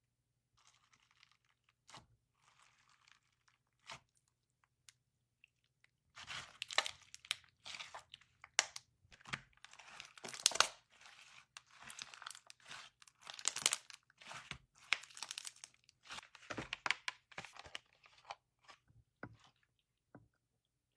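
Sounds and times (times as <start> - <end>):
crinkly material crunching: 6.4 - 8.8, 9.6 - 18.4.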